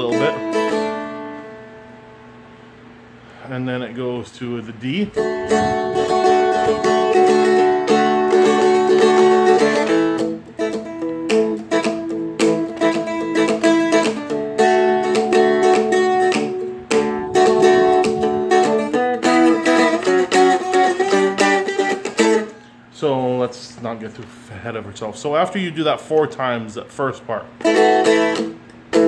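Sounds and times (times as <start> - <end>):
picked stringed instrument riff: 0.0 - 2.2, 5.0 - 22.7, 27.6 - 29.0.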